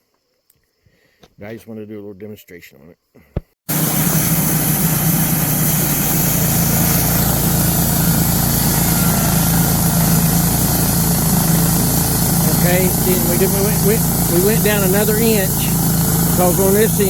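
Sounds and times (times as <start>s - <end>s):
sawmill engine running: 3.7s - 17.0s.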